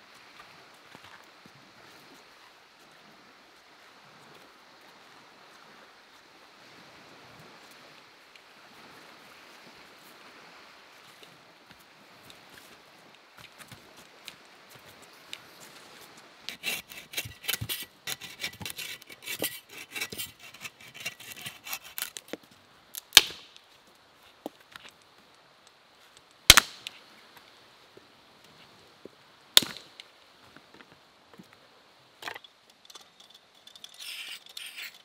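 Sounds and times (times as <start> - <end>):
rustling and clicking handling: 32.2 - 35.0.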